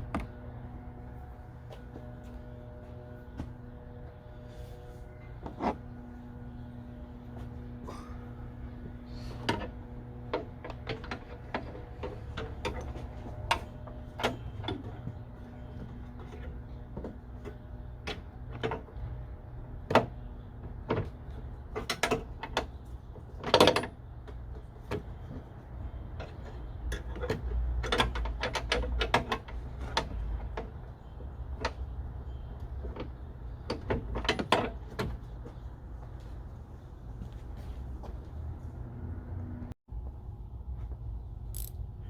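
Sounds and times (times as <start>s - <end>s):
low hum: 0.0s - 18.5s.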